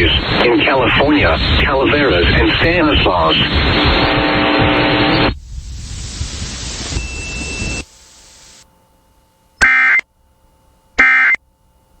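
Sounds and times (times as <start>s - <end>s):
emergency alert data tone bursts: 3.2s - 8.6s, 9.6s - 10.0s, 11.0s - 11.4s
hiss: 5.3s - 8.6s.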